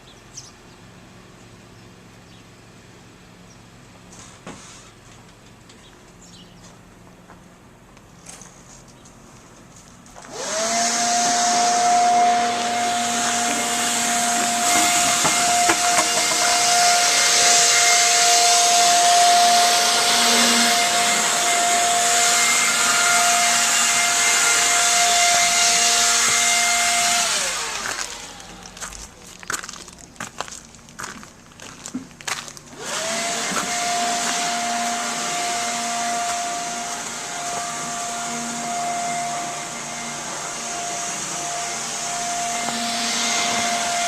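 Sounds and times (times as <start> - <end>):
electric blower whine: 9.8 - 29.7, 32.3 - 44.0.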